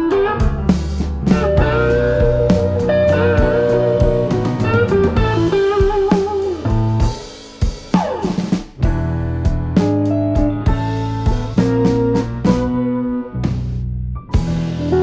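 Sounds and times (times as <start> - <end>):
jazz music: 0.0 - 15.0
lead guitar bending notes: 1.3 - 7.2, 10.2 - 13.5.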